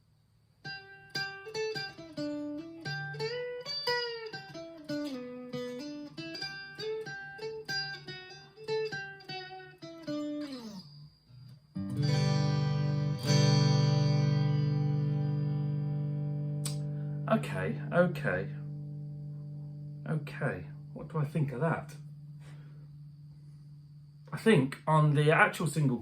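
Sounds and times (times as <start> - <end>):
clean electric guitar notes: 11.8 - 21.0
strummed guitar chord: 11.8 - 23.1.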